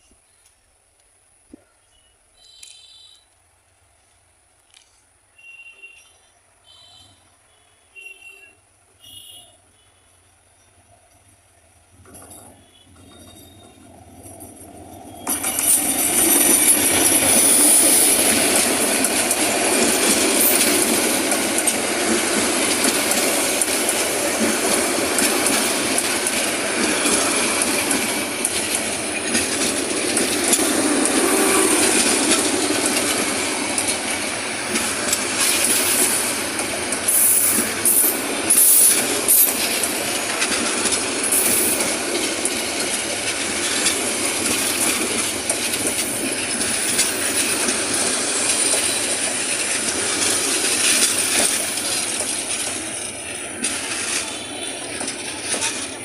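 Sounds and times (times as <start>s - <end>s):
train rumble and wheel noise: 0.0s - 56.0s
high-pitched wheel squeals: 12.5s - 14.0s.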